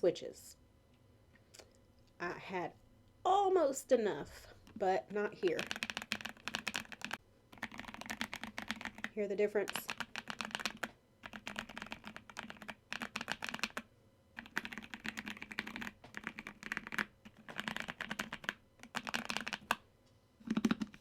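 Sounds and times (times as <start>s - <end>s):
mechanical keyboard typing: 4.6s - 19.8s, 20.4s - 21.0s.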